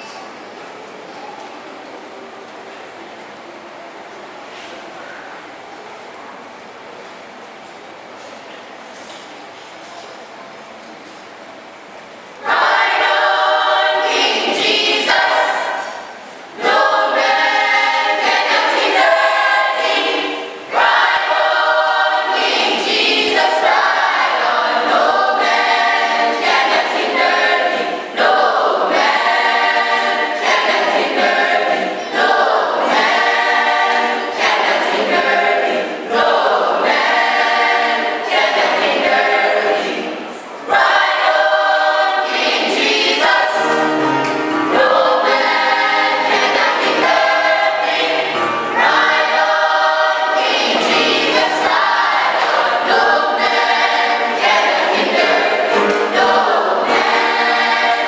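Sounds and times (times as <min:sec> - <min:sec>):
choir singing: 0:12.4 - 0:58.0.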